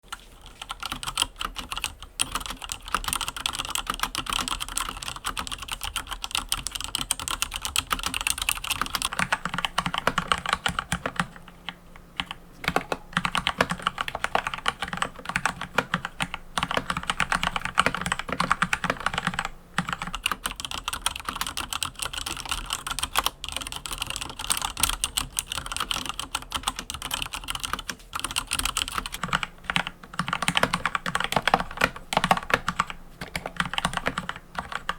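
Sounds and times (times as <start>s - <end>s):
mechanical keyboard typing: 0.1s - 34.9s.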